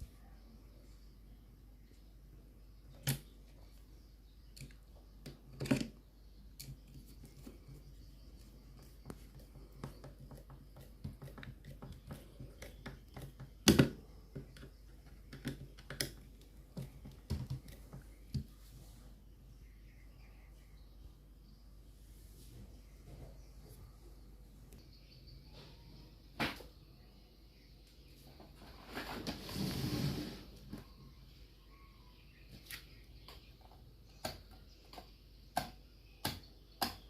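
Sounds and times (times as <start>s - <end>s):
fan parts clicking and tapping: 4.4s - 18.5s.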